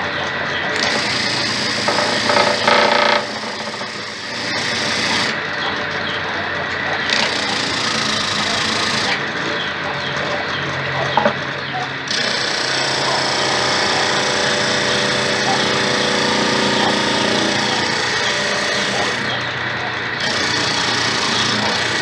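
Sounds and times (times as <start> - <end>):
electric motor humming: 0.6 - 5.6, 7.0 - 9.3, 12.1 - 22.0
wood grinding on sandpaper disc: 0.8 - 5.4, 12.1 - 19.6, 20.2 - 22.0.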